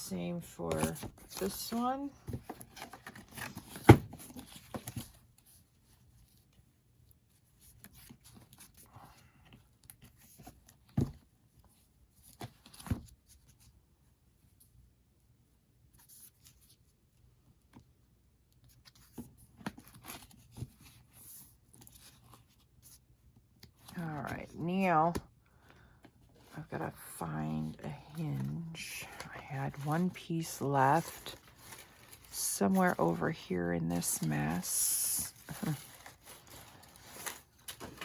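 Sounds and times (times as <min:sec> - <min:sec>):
paper rustling: 0:27.7 - 0:33.3, 0:34.0 - 0:38.0.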